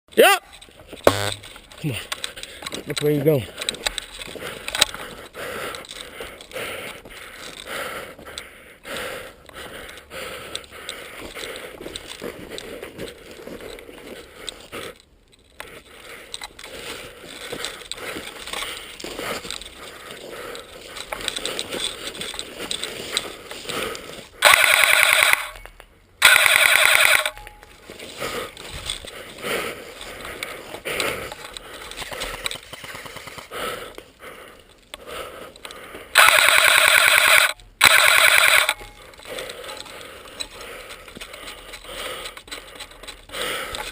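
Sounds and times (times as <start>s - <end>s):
rustling of gear: 0.5s - 7.7s, 9.8s - 24.4s, 26.6s - 43.9s
airsoft gun full-auto bursts: 24.4s - 25.6s, 26.2s - 27.4s, 36.2s - 39.0s.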